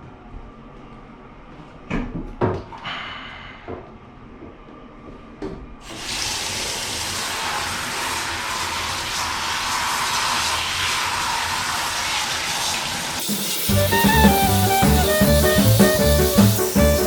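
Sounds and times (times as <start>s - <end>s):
running water hissing: 5.9s - 17.0s.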